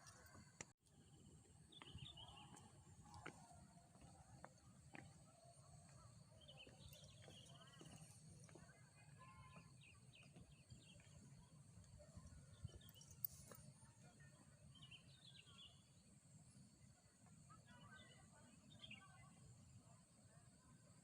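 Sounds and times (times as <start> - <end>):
small birds chirping: 0.0 - 4.4, 5.0 - 16.0.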